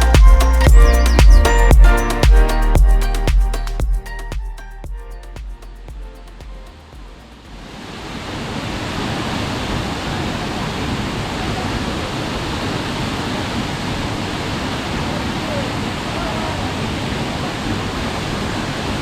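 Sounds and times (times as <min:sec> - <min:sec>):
waterfall roaring: 0:07.6 - 0:19.0.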